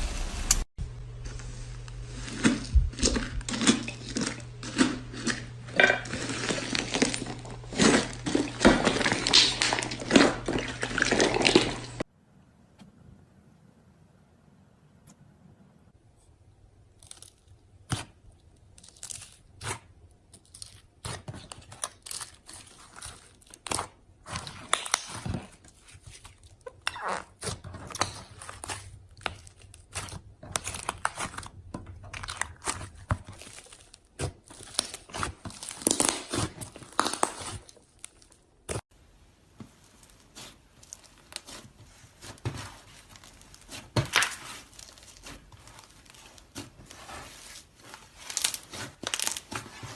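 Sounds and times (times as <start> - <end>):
slime crackling and popping: 6.1 - 12.0, 16.9 - 38.8, 39.7 - 49.9.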